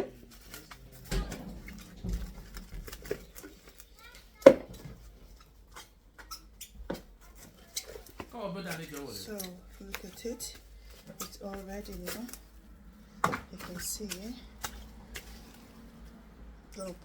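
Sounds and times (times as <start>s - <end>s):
sharp knock: 1.1s - 3.9s
container handling clicks and rustles: 5.7s - 17.0s.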